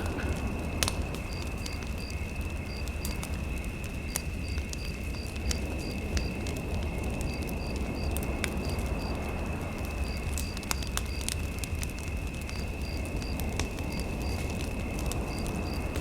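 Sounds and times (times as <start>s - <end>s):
steady low rumble: 0.0s - 3.6s
fire crackling and popping: 0.0s - 16.0s.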